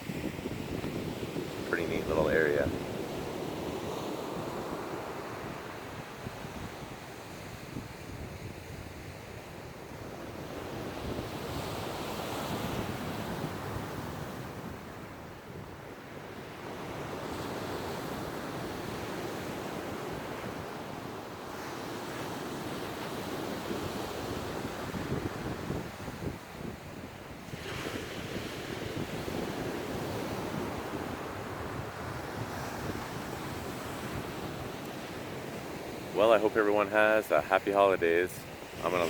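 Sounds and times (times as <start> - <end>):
ocean surf breaking: 0.0 - 7.7, 16.0 - 39.0
wind buffeting microphone: 0.0 - 15.8, 23.3 - 35.8.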